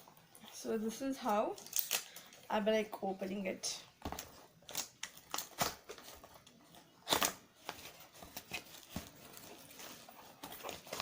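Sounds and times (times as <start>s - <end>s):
cardboard packaging clicks and scrapes: 4.1s - 11.0s
packaging rustle: 4.2s - 11.0s.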